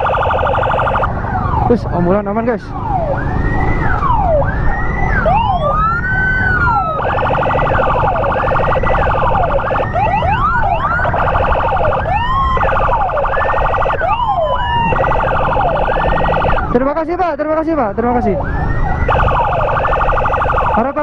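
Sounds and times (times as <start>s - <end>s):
rapid pulsing siren tone: 0.0s - 17.0s, 18.2s - 21.0s
emergency sirens wailing: 0.0s - 21.0s
wind noise: 3.6s - 16.8s.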